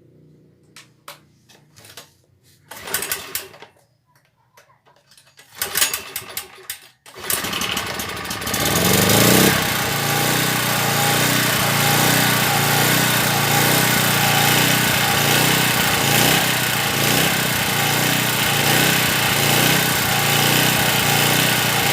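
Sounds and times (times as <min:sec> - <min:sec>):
small generator engine running: 0:07.2 - 0:21.9.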